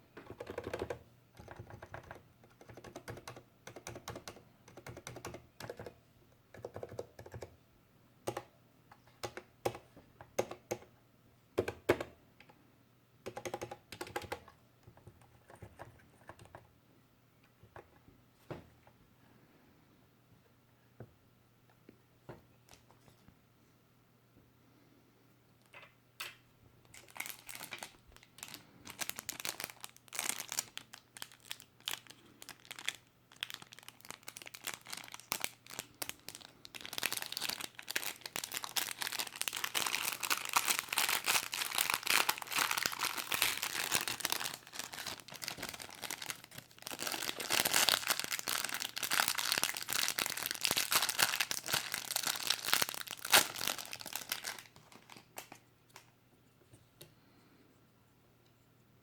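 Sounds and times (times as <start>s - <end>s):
packaging crinkling: 26.9s - 55.6s
packaging tearing: 27.0s - 55.6s.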